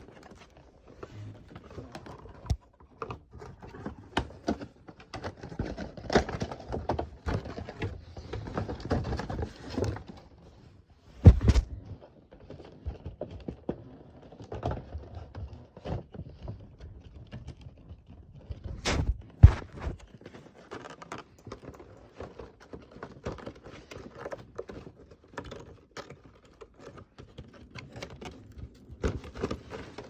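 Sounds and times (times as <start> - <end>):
loud thump: 11.2 - 11.8, 18.8 - 20.0
packaging rustling: 18.8 - 20.2.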